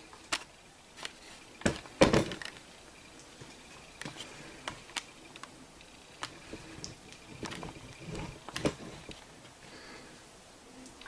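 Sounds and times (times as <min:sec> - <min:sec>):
objects knocking and clicking: 0:00.3 - 0:02.6, 0:06.2 - 0:09.2.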